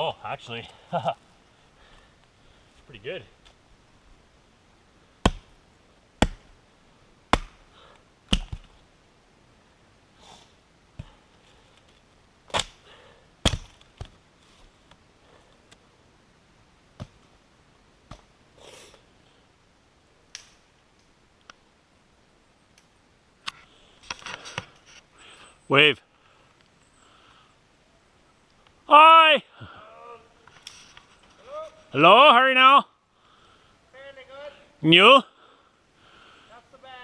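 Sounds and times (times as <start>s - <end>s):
axe chopping wood: 5.2s - 5.6s, 6.2s - 6.5s, 7.3s - 7.6s, 8.3s - 8.7s, 12.5s - 12.8s, 13.4s - 14.1s.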